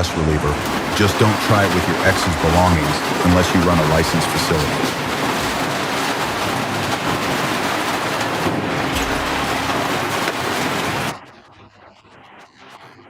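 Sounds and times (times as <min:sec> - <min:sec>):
quiet machine background: 0:00.0 - 0:06.4, 0:08.1 - 0:11.2
industrial shredder grinding: 0:00.4 - 0:11.2.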